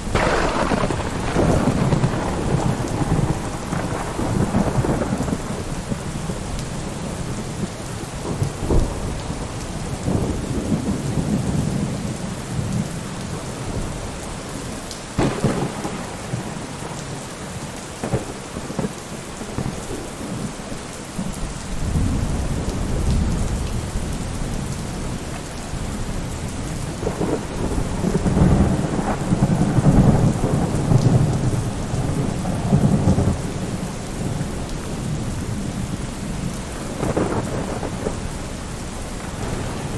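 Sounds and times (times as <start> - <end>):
thunder rumbling: 0.0 - 14.1, 15.2 - 39.9
steady rain: 0.0 - 39.9.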